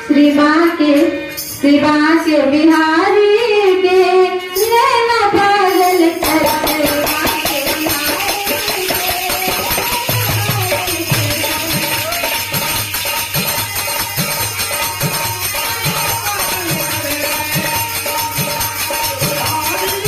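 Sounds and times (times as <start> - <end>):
jingling hand percussion: 0.0 - 20.0
drum beating evenly: 6.2 - 20.0.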